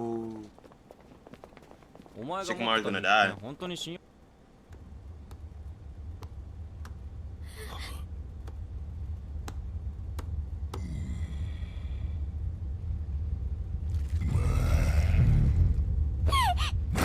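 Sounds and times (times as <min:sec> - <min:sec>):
low rumbling drone: 0:04.7 - 0:17.0.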